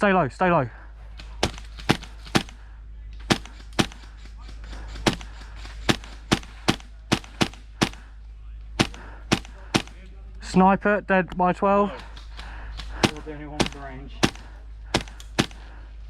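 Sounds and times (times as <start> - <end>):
airsoft gun shots: 1.4 - 2.6, 3.2 - 4.2, 5.0 - 8.0, 8.8 - 10.0, 12.9 - 15.7.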